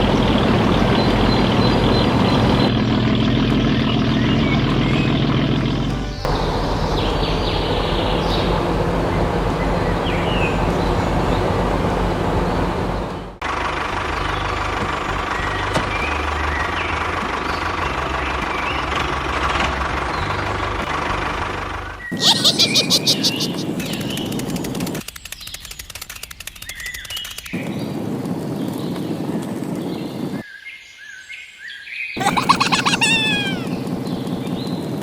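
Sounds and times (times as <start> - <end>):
motor droning: 0.0 - 22.1.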